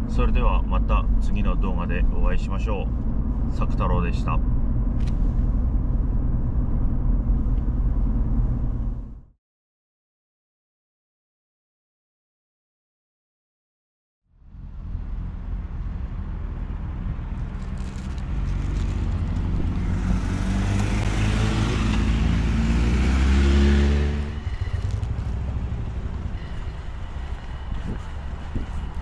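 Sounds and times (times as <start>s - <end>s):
car engine accelerating: 14.4s - 29.0s.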